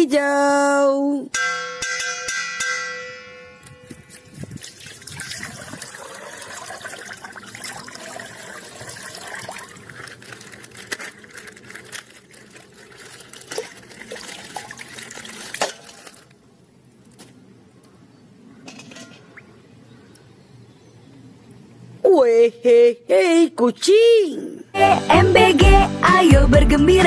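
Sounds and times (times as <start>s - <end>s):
plastic packaging crinkling: 8.2s - 16.4s.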